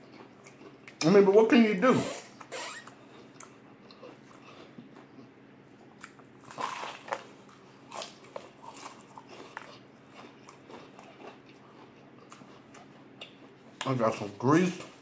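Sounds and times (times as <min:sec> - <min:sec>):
chewing crunches: 0:00.0 - 0:01.1, 0:02.4 - 0:15.0
fried chicken crunching: 0:05.9 - 0:15.0.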